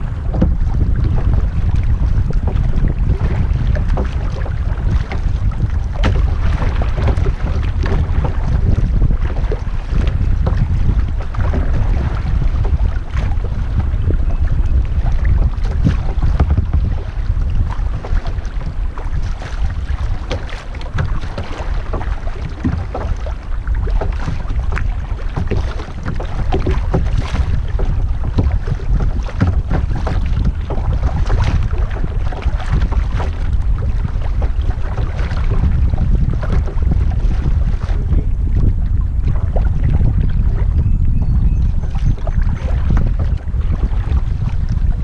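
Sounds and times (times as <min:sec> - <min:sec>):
wind buffeting microphone: 0:00.0 - 0:45.0
river water rushing and splashing: 0:18.0 - 0:29.4.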